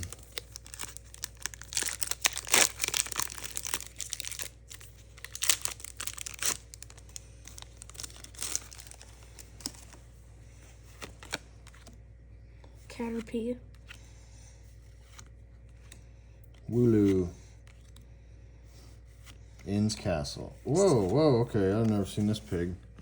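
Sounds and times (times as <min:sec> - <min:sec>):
foil wrapper crinkling and tearing: 0:00.0 - 0:10.0.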